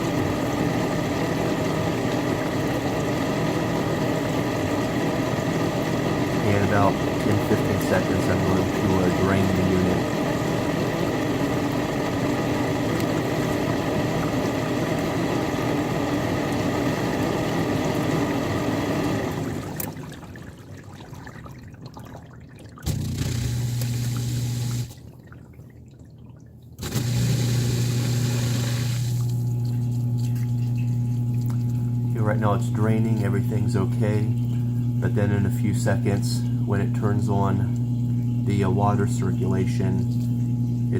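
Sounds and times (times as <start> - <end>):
dishwasher water sloshing: 0.0 - 40.9
drain pump humming: 0.0 - 40.9
loud grinding noise: 26.8 - 29.2.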